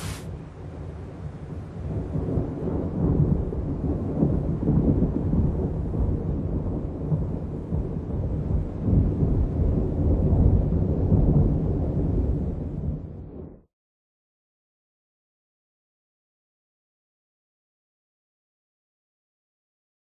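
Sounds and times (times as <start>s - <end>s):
thunder rumbling: 0.0s - 13.6s.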